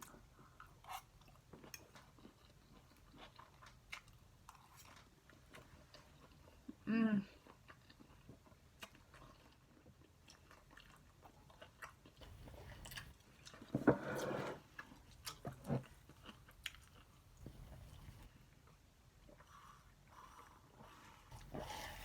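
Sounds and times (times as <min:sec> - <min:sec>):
person chewing food: 0:00.1 - 0:06.8, 0:07.4 - 0:13.8, 0:14.6 - 0:22.0.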